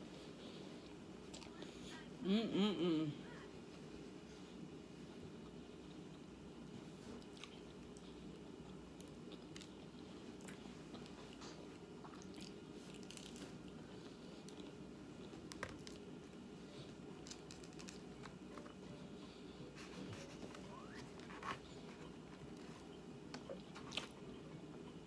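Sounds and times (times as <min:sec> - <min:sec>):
low background hum: 0:00.0 - 0:25.0
person chewing food: 0:00.8 - 0:01.7, 0:05.3 - 0:18.8.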